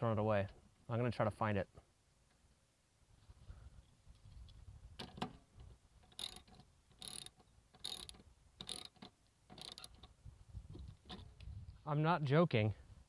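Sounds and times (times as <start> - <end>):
parts clattering and rattling: 5.0 - 10.2.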